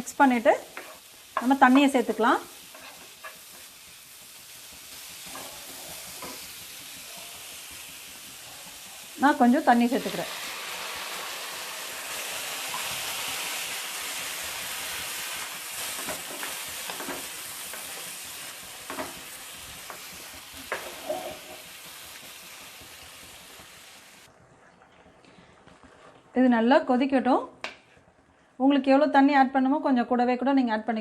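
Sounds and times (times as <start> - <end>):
food sizzling in a pan: 0.0 - 24.3.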